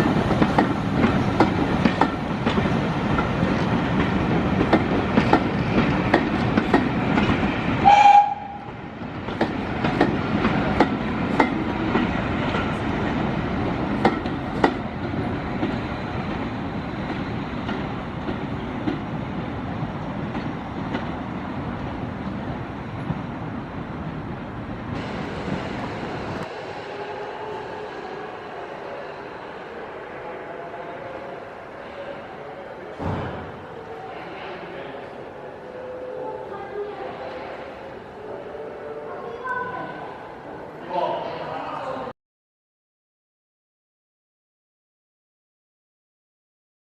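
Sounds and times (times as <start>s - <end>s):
train wheels clicking over rail joints: 0.0s - 7.5s
train warning blast: 7.8s - 8.8s.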